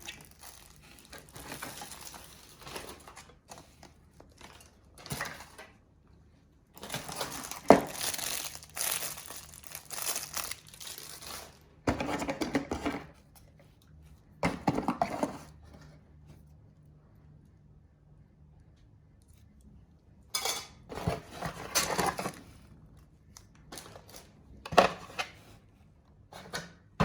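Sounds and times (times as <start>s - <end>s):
packaging crinkling and rustling: 0.0s - 5.8s, 6.8s - 13.1s.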